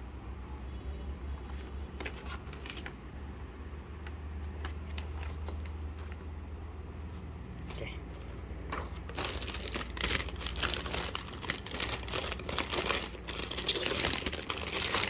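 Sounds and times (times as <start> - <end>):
paper and plastic bags rustling: 1.4 - 3.0, 3.9 - 6.3, 8.3 - 15.0.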